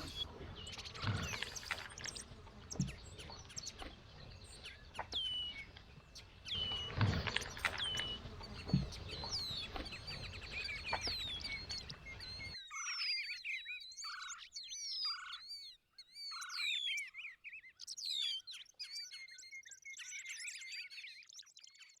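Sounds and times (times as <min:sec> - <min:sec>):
rustling with clicks and snaps: 0:00.0 - 0:12.6
birds chirping and whistling: 0:00.0 - 0:21.8.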